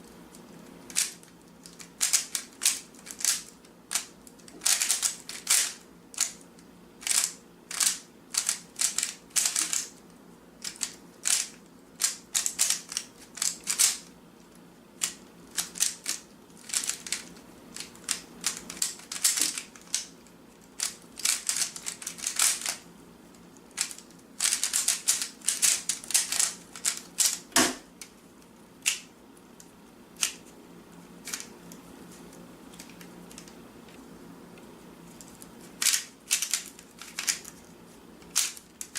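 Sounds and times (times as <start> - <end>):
puzzle cube clicking: 35.8 - 37.5.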